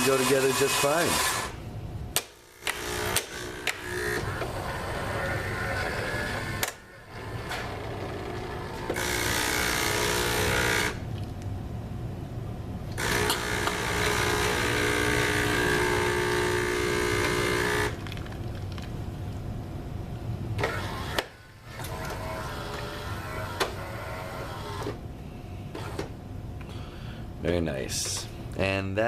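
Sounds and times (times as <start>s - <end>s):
espresso machine whirring: 2.4s - 11.0s, 13.0s - 18.2s, 20.6s - 25.0s.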